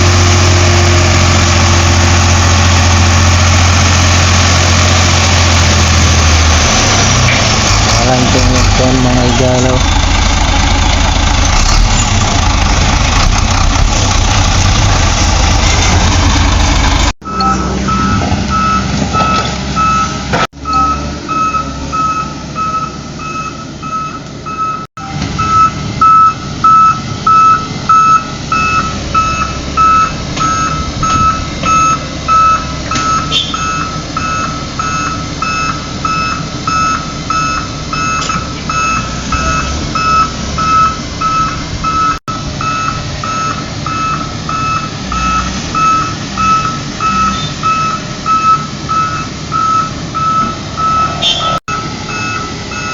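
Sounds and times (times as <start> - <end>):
truck engine running: 0.0 - 52.9
reversing alarm beeping: 17.2 - 52.9.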